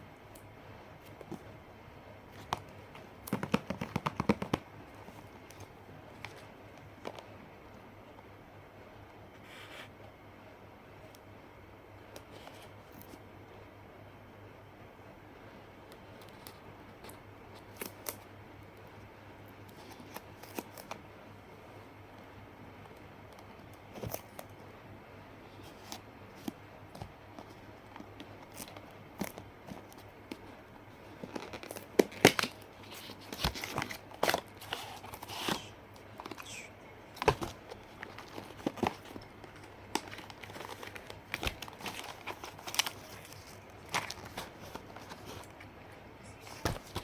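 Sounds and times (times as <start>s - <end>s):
packaging tearing and crinkling: 37.2s - 45.5s.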